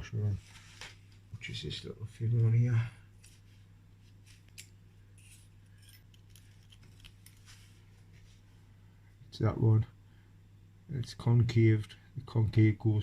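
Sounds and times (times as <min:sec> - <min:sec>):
low steady hum: 0:00.0 - 0:13.0
small metal parts clinking: 0:04.6 - 0:07.5.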